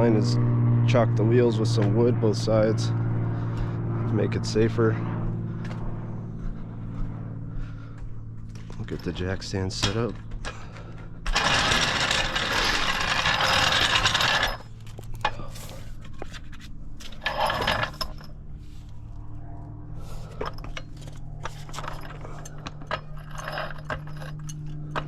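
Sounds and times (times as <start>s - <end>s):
metal jack scraping on floor: 11.3s - 14.8s, 17.0s - 18.3s, 20.2s - 25.0s
metallic clinks and knocks: 17.0s - 18.4s, 20.2s - 25.0s.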